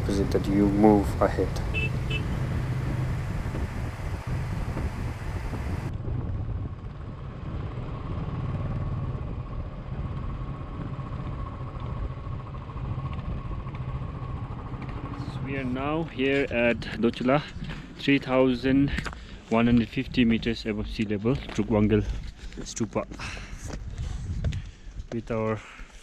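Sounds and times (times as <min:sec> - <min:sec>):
motorcycle engine running: 0:00.0 - 0:05.9.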